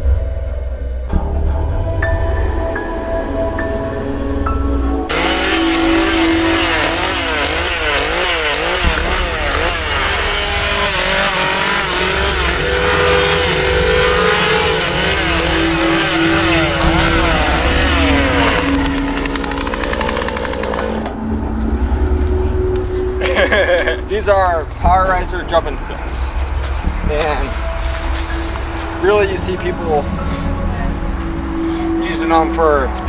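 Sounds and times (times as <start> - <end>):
chainsaw revving: 5.1 - 21.2.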